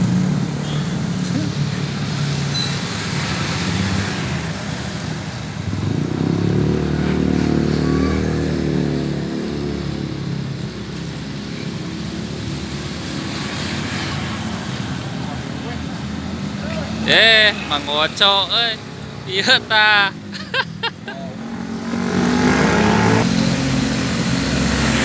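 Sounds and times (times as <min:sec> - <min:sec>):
steady traffic noise: 0:00.0 - 0:25.0
vehicle engine passing by: 0:05.7 - 0:10.5, 0:21.4 - 0:25.0.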